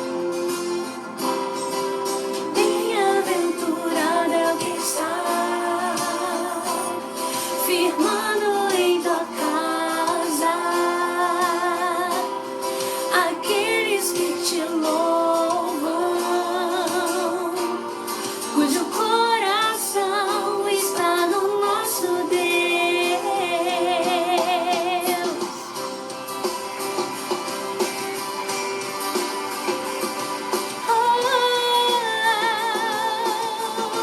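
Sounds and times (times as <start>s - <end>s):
instrumental accompaniment: 0.0s - 34.0s
woman singing gospel with vibrato: 2.5s - 25.8s, 30.8s - 34.0s.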